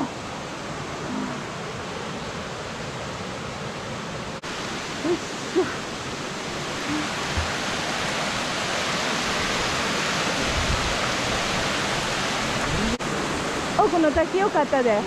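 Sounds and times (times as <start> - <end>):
waterfall rushing: 4.4 - 15.0.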